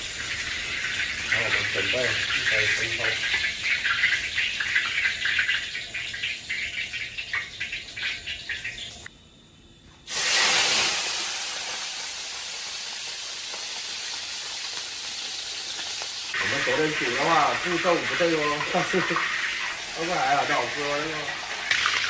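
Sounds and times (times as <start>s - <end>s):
oil sizzling in a pan: 0.0s - 9.4s, 10.0s - 22.0s.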